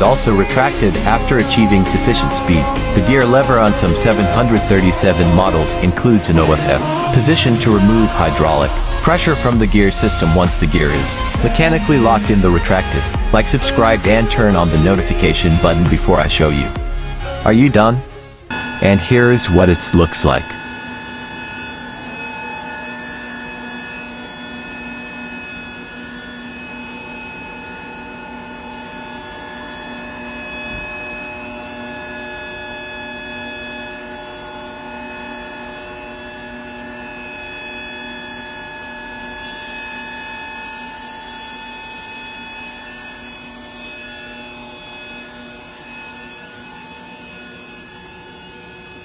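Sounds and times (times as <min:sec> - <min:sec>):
jet engine and airflow noise: 0:00.0 - 0:33.0
constant whining tones: 0:00.0 - 0:49.0.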